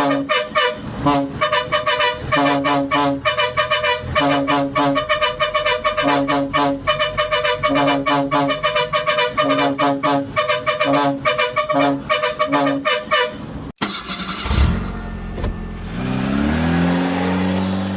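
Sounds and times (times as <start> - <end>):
musical vehicle horn: 0.0 - 14.7
engine starting and revving: 13.8 - 17.9.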